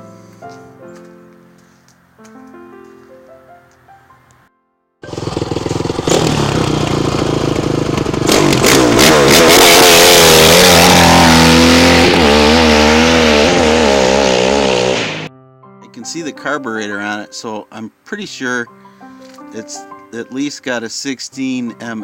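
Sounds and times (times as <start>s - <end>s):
motorcycle engine revving: 5.0s - 15.3s.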